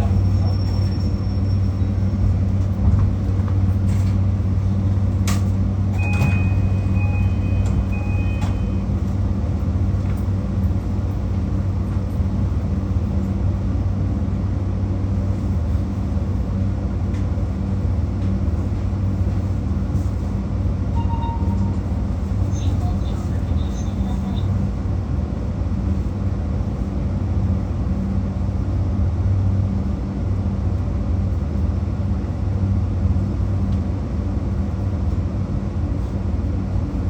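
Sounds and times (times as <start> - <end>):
electric train equipment hum: 0.0 - 37.0
click: 5.2 - 6.3
short high beeps: 6.0 - 8.8, 21.0 - 21.8.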